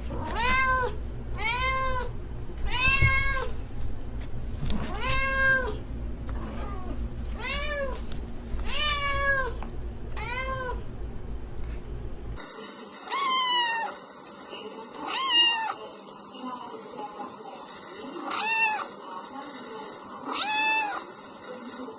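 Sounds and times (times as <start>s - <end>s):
cat meowing: 0.2s - 2.1s, 2.7s - 3.5s, 4.9s - 5.8s, 6.6s - 8.0s, 8.6s - 9.6s, 10.2s - 10.8s, 13.1s - 14.0s, 15.0s - 15.8s, 18.3s - 18.9s, 20.3s - 21.0s.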